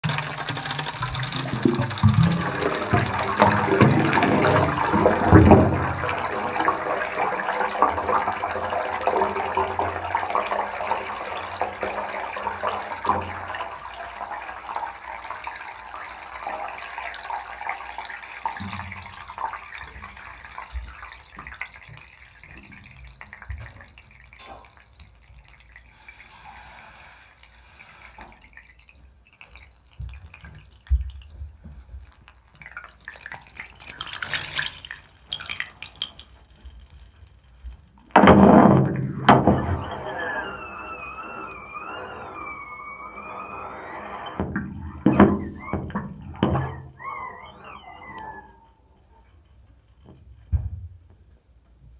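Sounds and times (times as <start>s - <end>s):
pipe knocks: 0.0s - 13.8s, 37.6s - 47.2s
water gurgling down drain pipe: 0.0s - 51.2s.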